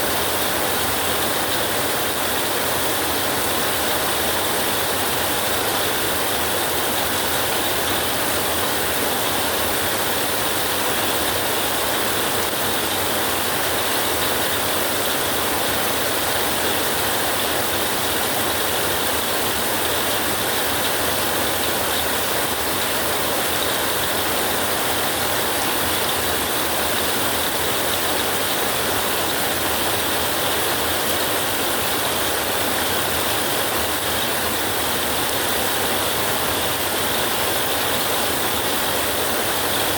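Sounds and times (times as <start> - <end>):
dense rain hiss: 0.0 - 39.9.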